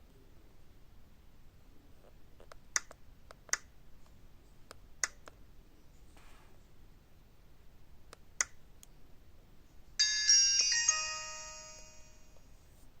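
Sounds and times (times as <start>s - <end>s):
descending phone chime: 10.0s - 12.4s.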